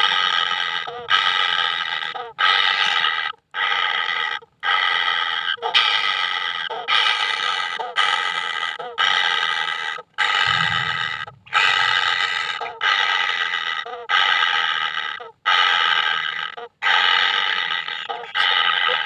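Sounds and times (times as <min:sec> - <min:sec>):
chick rasping begging calls: 0:13.8 - 0:19.0.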